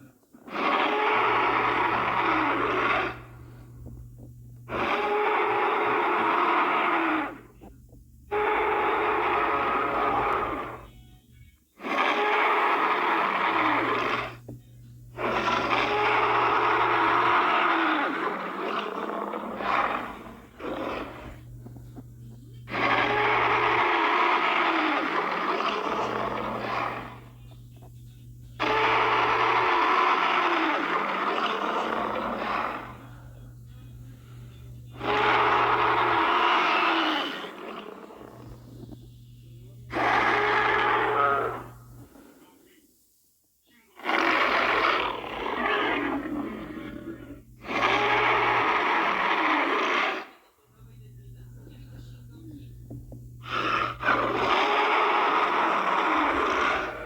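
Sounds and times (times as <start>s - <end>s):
dinosaur growling roar: 0.5s - 3.6s, 4.7s - 7.7s, 8.3s - 10.9s, 11.8s - 14.4s, 15.2s - 21.8s, 22.7s - 27.4s, 28.6s - 33.2s, 34.9s - 38.8s, 39.9s - 42.2s, 44.0s - 50.3s, 53.4s - 57.0s.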